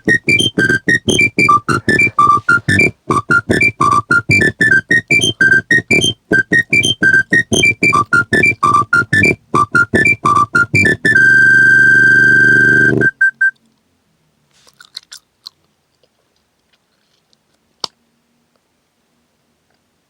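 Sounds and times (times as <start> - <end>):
electronic phone ringtone: 0.0 - 13.5
short beeps: 0.0 - 13.5.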